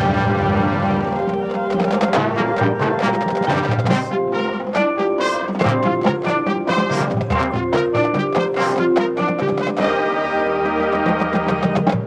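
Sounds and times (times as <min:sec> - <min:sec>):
brass chords: 0:00.0 - 0:12.0
sharp percussion hits: 0:01.1 - 0:09.9.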